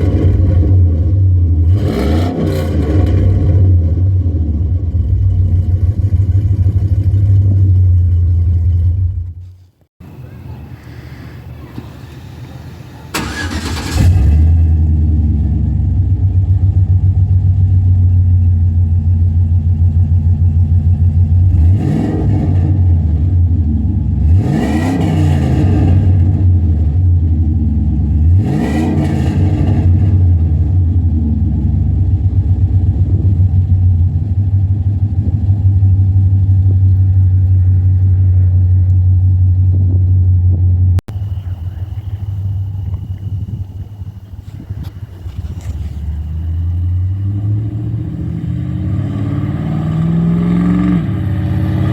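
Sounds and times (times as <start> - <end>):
truck engine idling: 3.7 - 21.5, 30.3 - 47.9.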